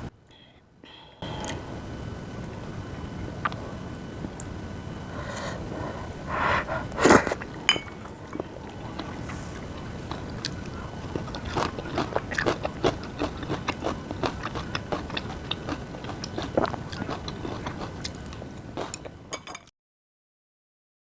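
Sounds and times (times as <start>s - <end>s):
person chewing and biting food: 8.4s - 19.0s.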